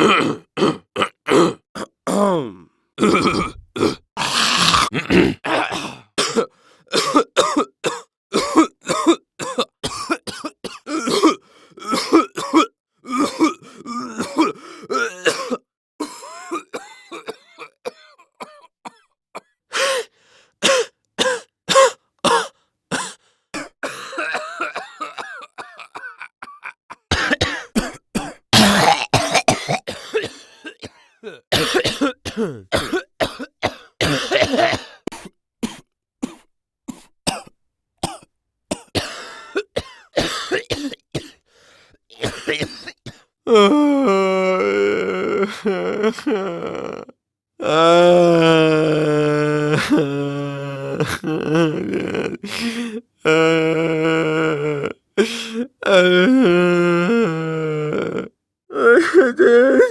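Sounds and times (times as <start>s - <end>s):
throat clearing: 0.0s - 4.0s, 4.6s - 6.5s
person coughing: 0.0s - 19.5s, 20.6s - 41.4s, 42.2s - 43.2s.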